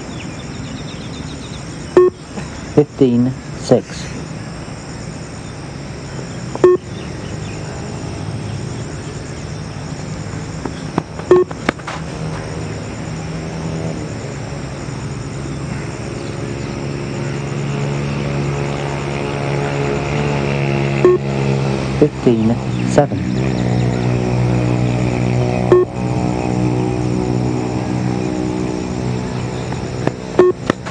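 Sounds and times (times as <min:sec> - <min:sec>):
short electronic beeps: 0:02.0 - 0:02.2, 0:06.6 - 0:06.9, 0:11.3 - 0:11.5, 0:21.0 - 0:21.2, 0:25.7 - 0:25.9, 0:30.4 - 0:30.6.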